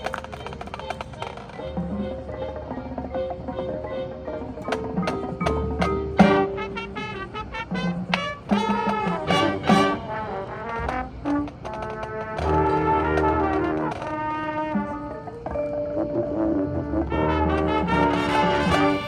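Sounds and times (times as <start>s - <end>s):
brass section playing chords: 6.2s - 15.2s, 16.2s - 19.0s.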